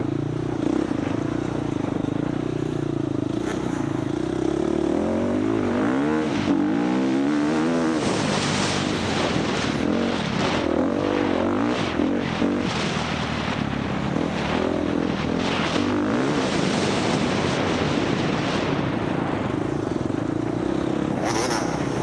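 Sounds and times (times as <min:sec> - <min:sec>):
dirt bike engine revving: 0:00.0 - 0:22.0
rough wind noise: 0:05.6 - 0:22.0
chassis noise: 0:21.1 - 0:22.0.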